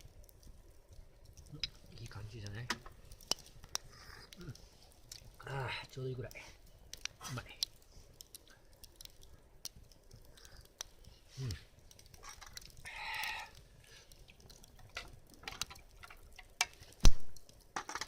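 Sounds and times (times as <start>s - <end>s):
hissing rustle: 0.0s - 17.8s
campfire crackling: 0.0s - 18.0s
sharp pops: 14.3s - 18.0s.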